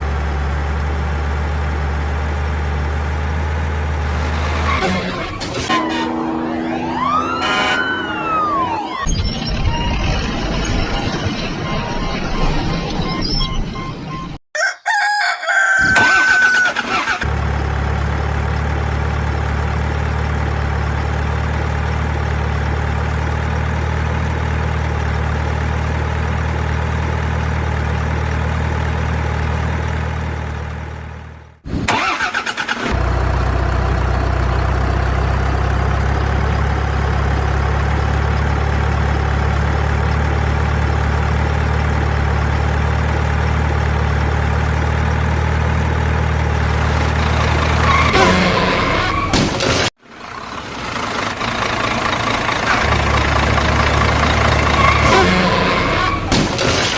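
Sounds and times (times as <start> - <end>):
short high wavering sound: 6.0 - 14.4
heavy vehicle engine idling: 50.1 - 56.3.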